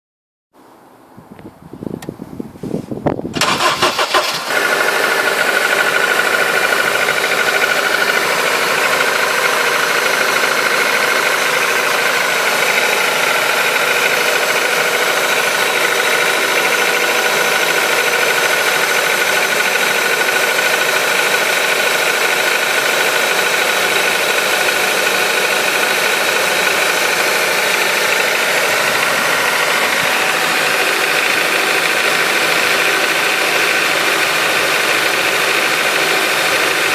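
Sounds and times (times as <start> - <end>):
engine idling: 3.3 - 36.9
engine knock: 3.4 - 36.9
engine starter cranking: 3.4 - 36.9.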